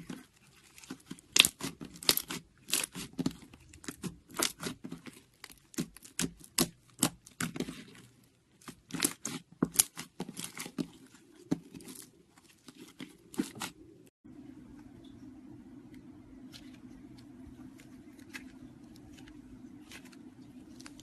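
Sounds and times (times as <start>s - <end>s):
slime crackling and popping: 0.8s - 7.8s.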